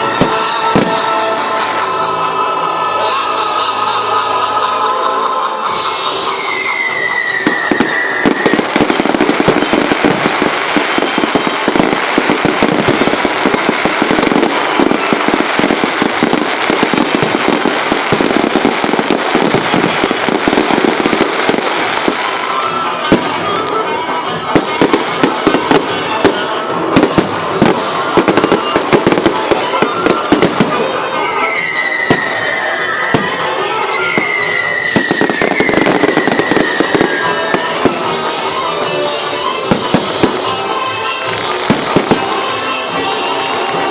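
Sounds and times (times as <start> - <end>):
fireworks bangs and crackling: 0.0 - 4.5, 5.3 - 43.9
loud show music: 0.0 - 43.9
falling firework whistles: 5.7 - 23.7, 24.6 - 38.8.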